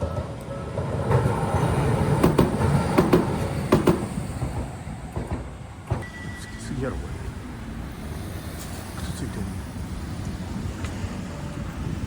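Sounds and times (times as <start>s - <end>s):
wheels clacking over rail joints: 0.0s - 7.1s
train rumbling: 0.0s - 12.0s.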